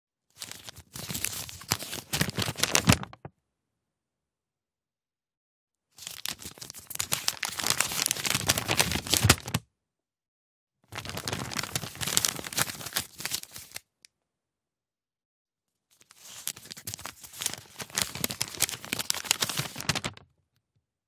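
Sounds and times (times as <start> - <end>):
paper leaflet crackling and rustling: 0.3 - 3.3, 6.0 - 9.6, 10.9 - 13.8, 16.0 - 20.3.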